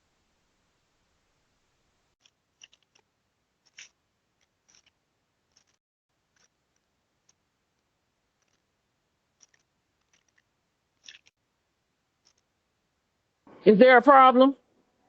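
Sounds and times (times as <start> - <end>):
faint high clicks: 9.4 - 11.4.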